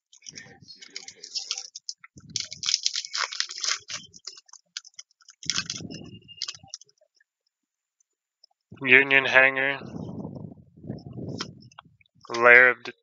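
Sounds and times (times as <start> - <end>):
cards being handled: 0.2 - 6.8
foil wrapper crinkling and tearing: 0.2 - 6.8.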